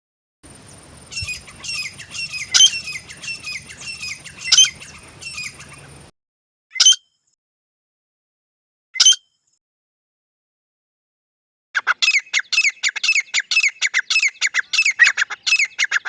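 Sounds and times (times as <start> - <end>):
bird harsh falling calls: 0.5 - 6.1.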